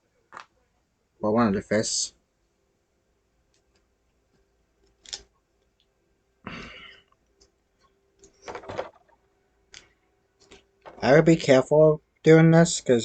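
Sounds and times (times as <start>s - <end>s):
plastic parts clicking: 4.8s - 5.9s
brief rustle: 8.2s - 9.2s.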